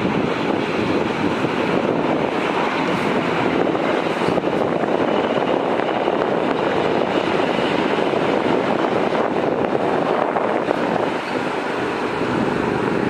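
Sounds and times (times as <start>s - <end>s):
jet engine roaring: 0.0s - 13.0s.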